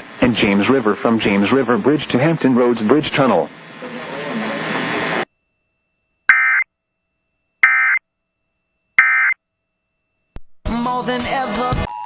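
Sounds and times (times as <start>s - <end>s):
harsh digital data bursts: 6.3s - 6.6s, 7.6s - 8.0s, 9.0s - 9.4s.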